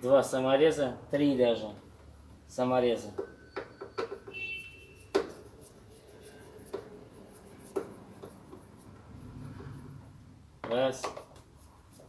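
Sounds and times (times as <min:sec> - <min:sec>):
light scraping and rubbing: 0:04.3 - 0:12.0.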